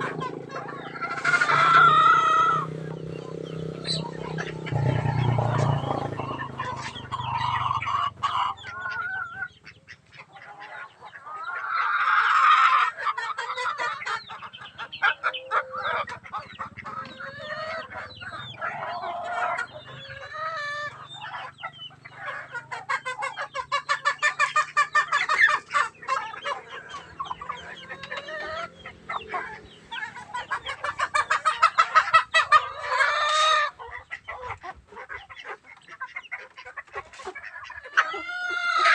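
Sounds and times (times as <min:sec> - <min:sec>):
rooster calls: 0:00.0 - 0:09.4
chickens clucking: 0:00.0 - 0:38.9.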